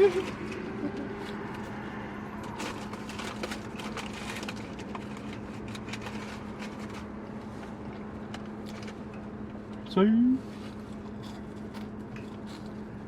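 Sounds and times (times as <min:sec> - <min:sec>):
steady low car cabin hum: 0:00.0 - 0:13.0
food wrappers clicking and rustling: 0:02.4 - 0:07.2, 0:08.2 - 0:09.2, 0:10.9 - 0:13.0.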